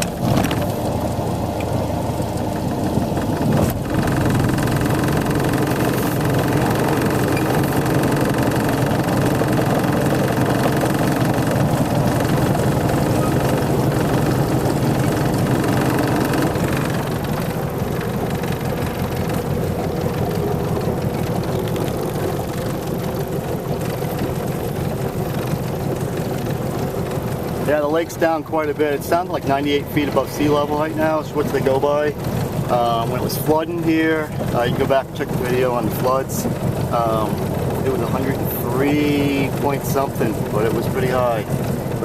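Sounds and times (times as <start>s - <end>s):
boat engine running: 0.0s - 42.0s.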